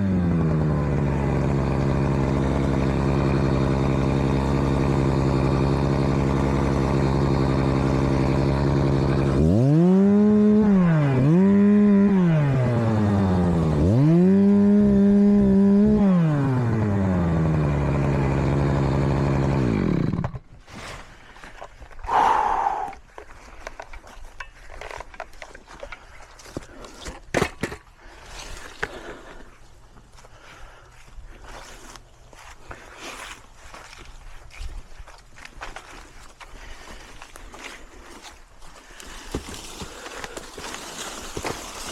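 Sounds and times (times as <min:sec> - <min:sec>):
chainsaw engine idling and revving: 0:00.0 - 0:20.5, 0:30.1 - 0:41.9
rustling: 0:31.4 - 0:41.9.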